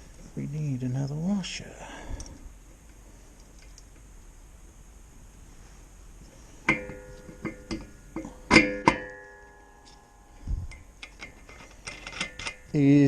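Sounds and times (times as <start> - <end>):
metal parts clinking and ringing: 8.5 - 10.4, 11.0 - 12.7.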